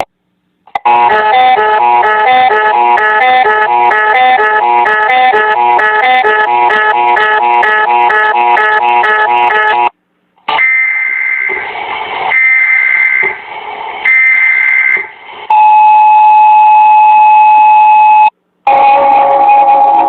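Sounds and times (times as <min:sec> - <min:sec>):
high alarm tone: 0:00.8 - 0:09.9, 0:12.3 - 0:13.4, 0:14.1 - 0:20.0
hiss: 0:11.5 - 0:14.1.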